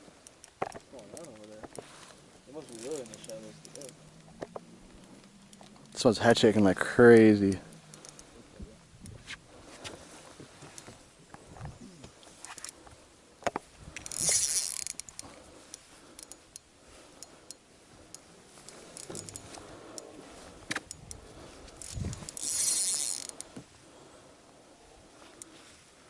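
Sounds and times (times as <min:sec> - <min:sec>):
reel gears ratcheting and clicking: 0:00.2 - 0:01.8, 0:02.5 - 0:09.2, 0:13.9 - 0:23.6
fishing reel drag buzzing: 0:02.5 - 0:06.0, 0:06.6 - 0:09.8, 0:13.9 - 0:24.3.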